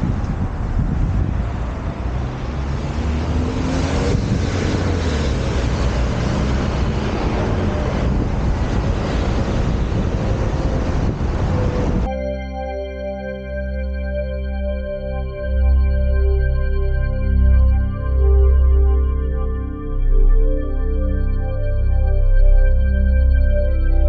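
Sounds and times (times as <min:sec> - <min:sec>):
road noise rumble: 0:00.0 - 0:12.1
wind on microphone: 0:00.0 - 0:12.1
faint wavering tone: 0:12.0 - 0:24.0.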